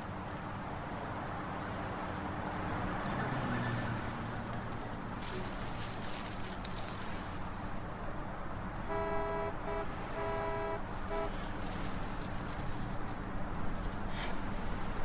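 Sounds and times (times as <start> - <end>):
car horn honking: 8.8 - 11.5.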